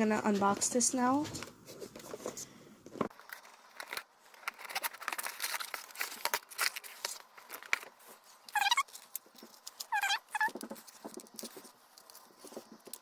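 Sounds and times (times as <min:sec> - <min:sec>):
packaging crinkling and tearing: 0:03.1 - 0:13.0.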